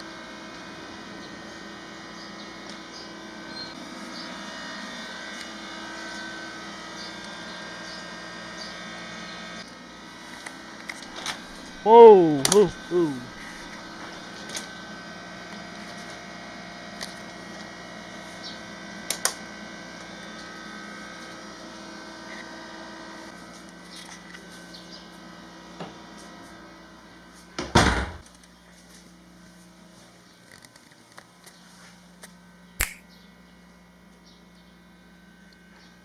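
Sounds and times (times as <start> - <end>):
steady room hum: 10.1 - 14.2.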